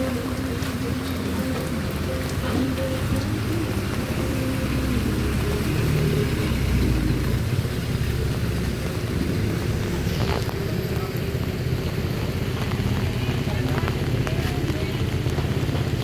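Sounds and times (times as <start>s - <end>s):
market bustle: 0.0s - 16.0s
rain hissing: 0.0s - 16.0s
vehicle engine rumbling: 0.0s - 16.0s.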